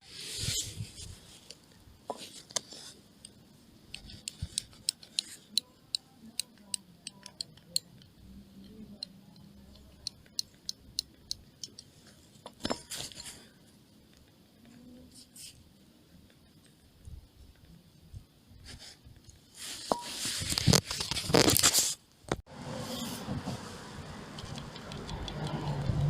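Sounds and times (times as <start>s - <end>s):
suspension clicking and ticking: 24.3s - 26.0s.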